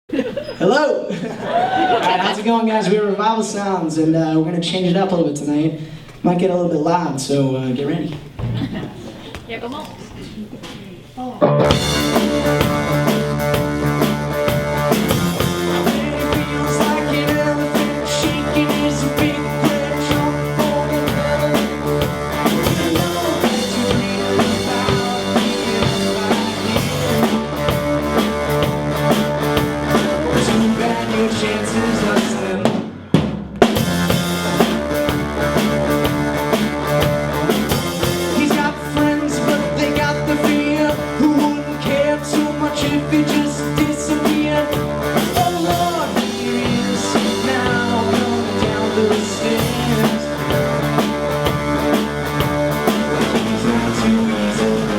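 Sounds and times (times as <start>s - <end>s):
drum kit: 11.4s - 54.9s
rock band playing live: 11.4s - 54.9s.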